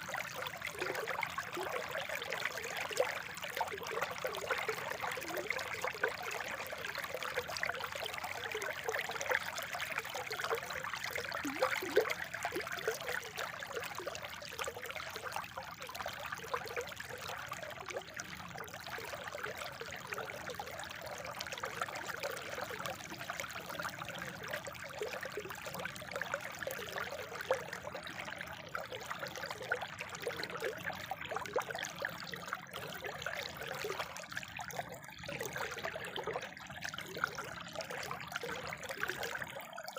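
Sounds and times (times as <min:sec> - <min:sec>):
spring water trickling: 0:00.0 - 0:15.3.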